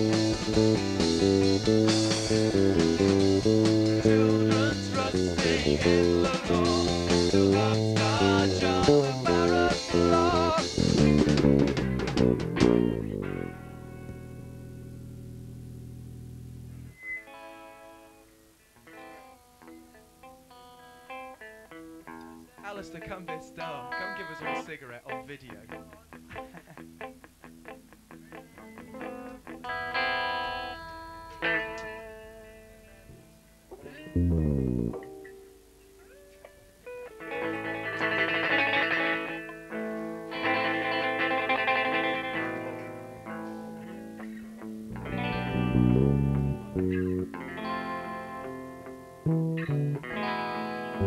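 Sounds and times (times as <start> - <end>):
rock band playing live: 0.0 - 14.3, 37.2 - 51.0
electric guitar: 0.0 - 51.0
amplifier electrical hum: 12.4 - 17.0.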